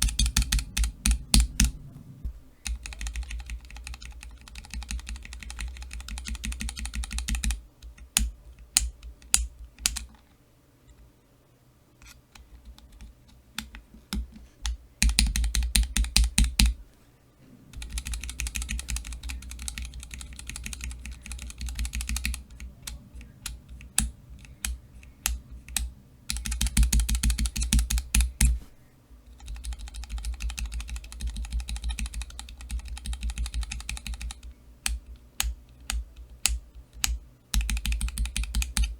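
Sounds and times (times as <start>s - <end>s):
mechanical key switches clicking: 29.4s - 38.9s.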